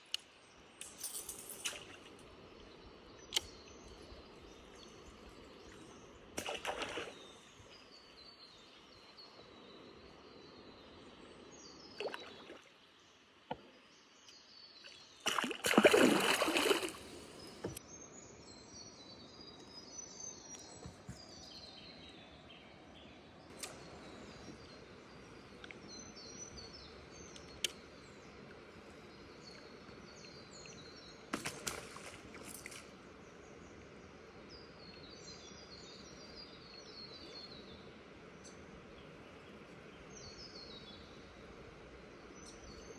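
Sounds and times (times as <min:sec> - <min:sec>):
birds chirping: 0:00.5 - 0:17.8
water splashing: 0:06.4 - 0:07.4, 0:12.0 - 0:12.7, 0:15.2 - 0:17.8, 0:31.4 - 0:33.0.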